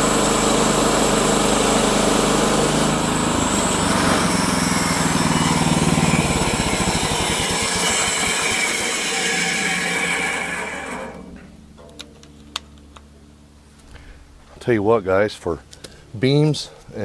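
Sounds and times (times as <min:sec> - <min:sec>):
sawmill gasoline engine running: 0:00.0 - 0:11.6.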